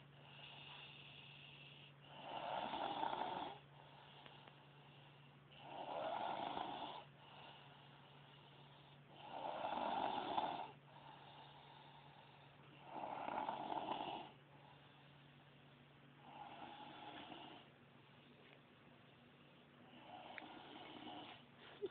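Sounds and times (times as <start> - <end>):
quiet breathing: 0.0 - 21.9
woman snoring loudly: 2.1 - 3.6, 5.6 - 7.1, 9.1 - 10.8, 12.8 - 14.3.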